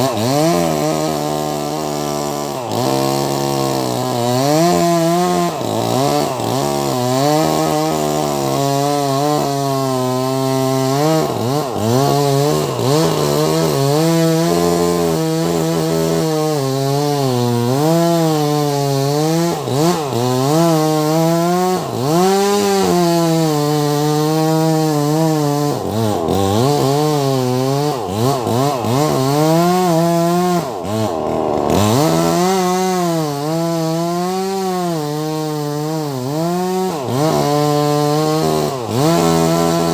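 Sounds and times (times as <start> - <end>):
chainsaw cutting log: 0.0 - 39.9.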